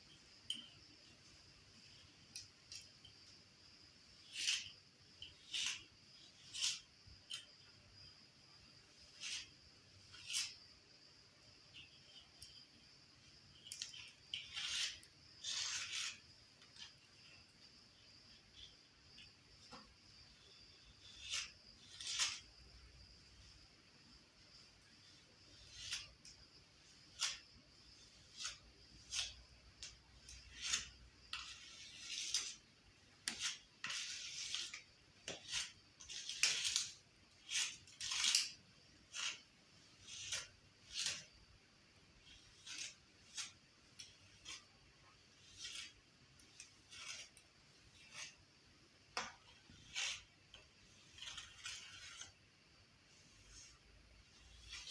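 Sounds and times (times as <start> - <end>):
metal tool scraping a wall: 4.2 - 7.5, 8.9 - 10.6, 13.6 - 17.4, 20.4 - 22.8, 25.0 - 41.4, 42.2 - 48.4, 49.2 - 52.4, 53.1 - 54.9.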